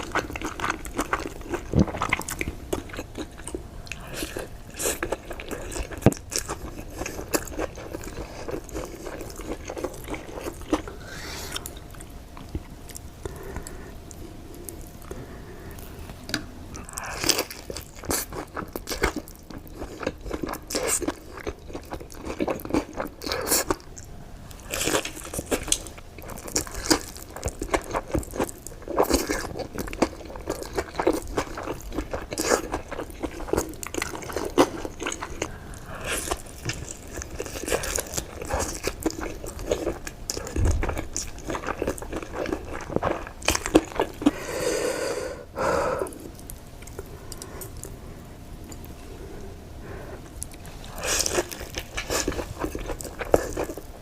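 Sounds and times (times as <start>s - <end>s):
person chewing crunchy food: 0.0s - 54.0s.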